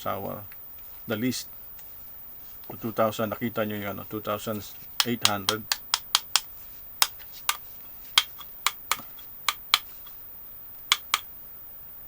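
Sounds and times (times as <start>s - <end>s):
battery cells clicking: 4.6s - 10.3s, 10.9s - 11.4s.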